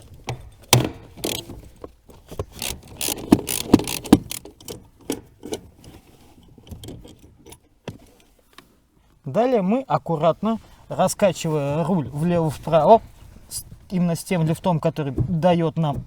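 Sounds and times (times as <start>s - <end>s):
socket wrench metal clicks: 2.6s - 4.5s.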